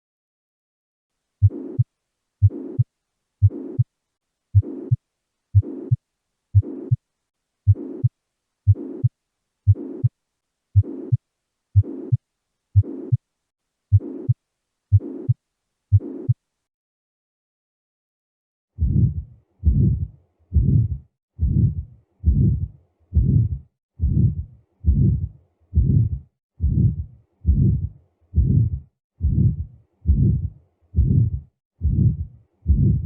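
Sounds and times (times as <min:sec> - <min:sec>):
heartbeat with murmur: 0:01.4 - 0:03.9, 0:04.5 - 0:05.0, 0:05.6 - 0:06.0, 0:06.6 - 0:07.0, 0:07.7 - 0:08.1, 0:08.7 - 0:09.1, 0:09.7 - 0:10.1, 0:10.8 - 0:11.2, 0:11.8 - 0:12.2, 0:18.8 - 0:33.0.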